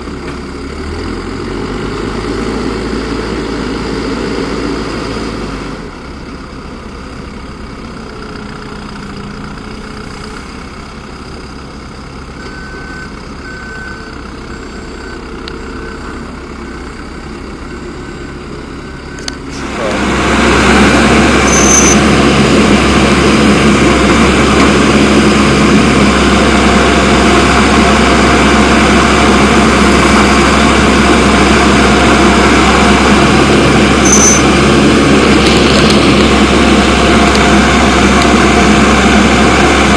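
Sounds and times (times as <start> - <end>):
diesel engine revving: 0.0 - 39.9.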